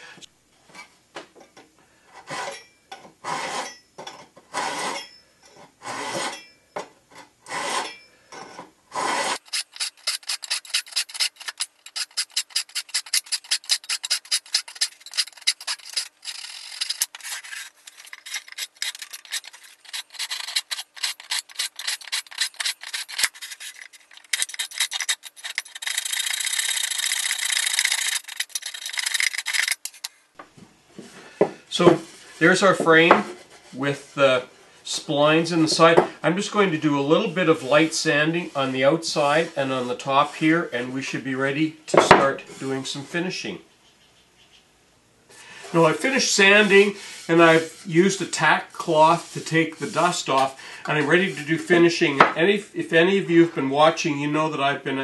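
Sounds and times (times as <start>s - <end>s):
hand saw cutting wood: 2.2s - 2.6s, 3.2s - 3.8s, 4.5s - 5.0s, 5.8s - 6.4s, 7.4s - 7.9s, 8.9s - 30.1s
filing strokes on wood: 5.8s - 6.4s, 9.0s - 28.3s.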